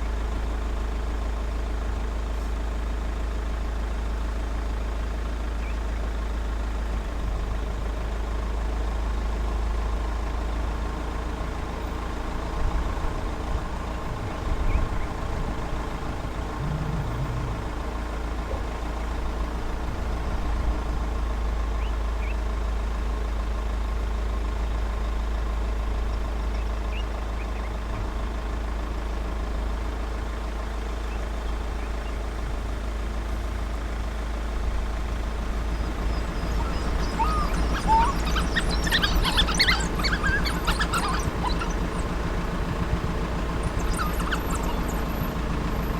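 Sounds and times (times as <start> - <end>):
vehicle engine idling: 0.0 - 45.9
faint high chirps: 16.6 - 17.8, 35.7 - 42.2.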